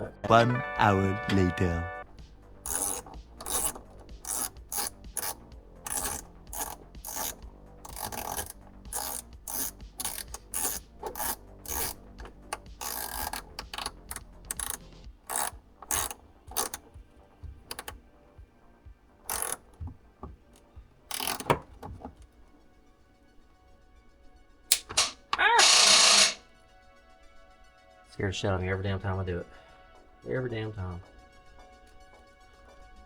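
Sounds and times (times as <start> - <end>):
ratchet wrench clicking: 2.1 - 18.0, 19.3 - 22.2, 24.7 - 26.4.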